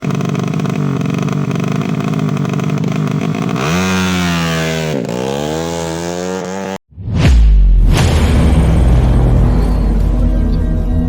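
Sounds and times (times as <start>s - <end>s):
motorcycle engine revving: 0.0s - 6.8s.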